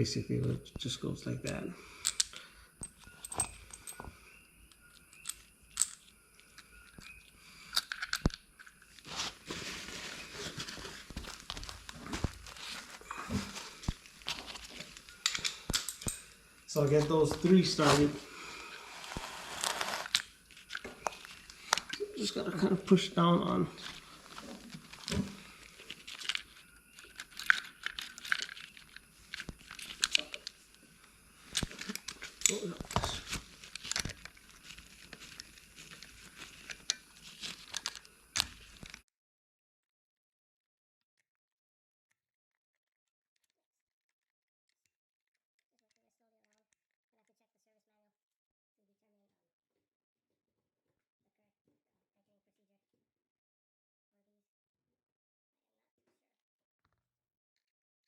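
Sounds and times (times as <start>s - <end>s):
metal parts clicking and knocking: 1.4s - 4.1s, 4.9s - 6.1s, 6.8s - 8.8s, 11.2s - 17.4s, 24.8s - 30.6s, 31.5s - 34.4s, 35.1s - 39.0s
steady rustling scrape: 9.0s - 22.4s.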